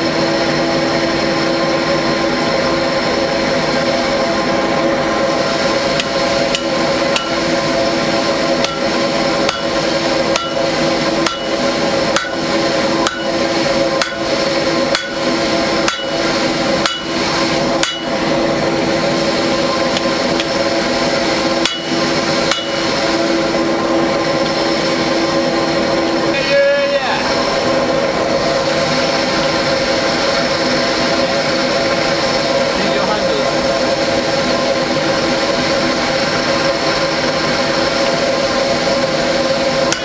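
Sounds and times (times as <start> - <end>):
forge blower hum: 0.0 - 40.0
hammer blows on anvil: 6.0 - 7.6, 8.6 - 18.3, 21.6 - 23.0.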